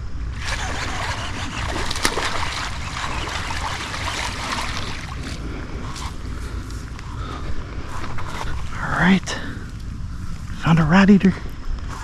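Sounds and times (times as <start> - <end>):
water splashing and churning: 0.3 - 9.6
sharp splashes: 0.4 - 5.4.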